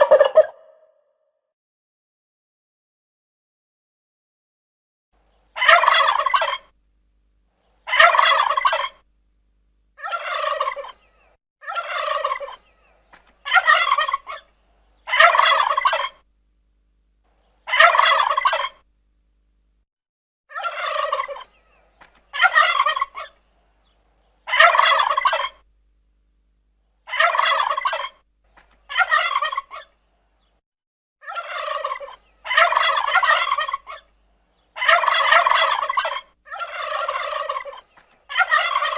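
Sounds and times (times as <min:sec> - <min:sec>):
turkey gobbling: 0:00.0 - 0:00.9, 0:05.6 - 0:06.7, 0:07.8 - 0:09.0, 0:10.0 - 0:16.2, 0:17.6 - 0:18.8, 0:20.5 - 0:23.4, 0:24.4 - 0:25.6, 0:27.1 - 0:28.2, 0:28.8 - 0:30.0, 0:31.2 - 0:34.1, 0:34.7 - 0:38.9.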